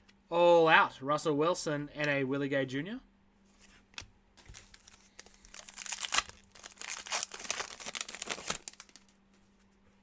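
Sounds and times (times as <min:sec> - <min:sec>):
foil wrapper crinkling and tearing: 0:04.4 - 0:09.2.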